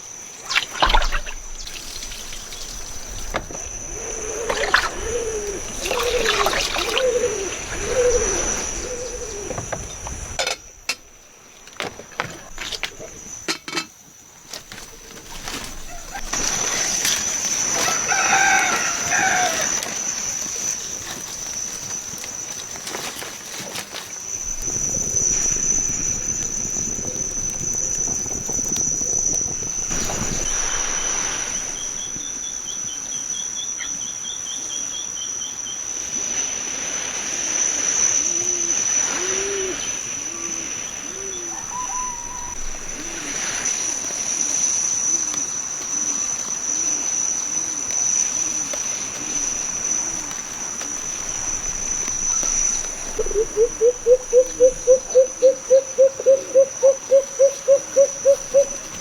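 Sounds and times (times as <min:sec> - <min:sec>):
low repeated bird calls: 0:00.0 - 0:10.4, 0:38.2 - 0:43.6, 0:47.4 - 0:59.0
insects droning: 0:00.0 - 0:59.0
bird trilling: 0:00.4 - 0:10.4, 0:41.1 - 0:43.4, 0:52.6 - 0:58.9.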